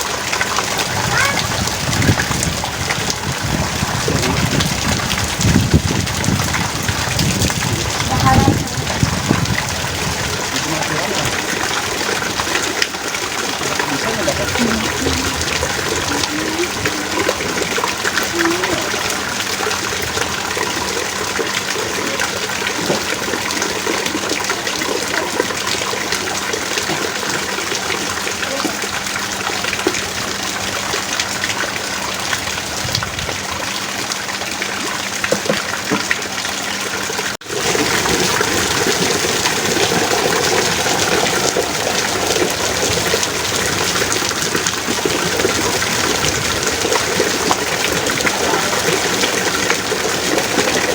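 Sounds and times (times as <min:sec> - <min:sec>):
heavy rain pouring: 0:00.0 - 0:50.9.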